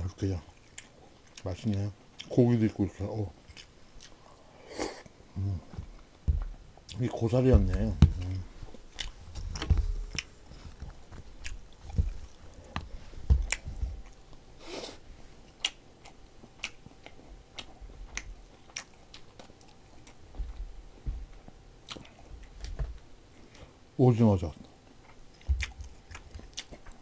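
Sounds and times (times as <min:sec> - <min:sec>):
person chewing food: 0:00.4 - 0:23.8, 0:24.6 - 0:27.0
soft low thumps: 0:05.4 - 0:06.8, 0:07.4 - 0:14.2, 0:20.3 - 0:21.6, 0:25.5 - 0:25.9.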